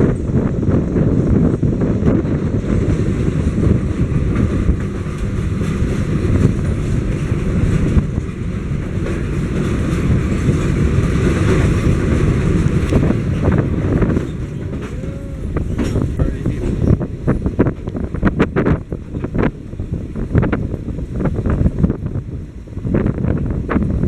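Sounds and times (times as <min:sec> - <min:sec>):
train rumbling on track: 0:00.0 - 0:24.0
wind buffeting microphone: 0:00.0 - 0:24.0
train wheels rattling: 0:02.6 - 0:18.3.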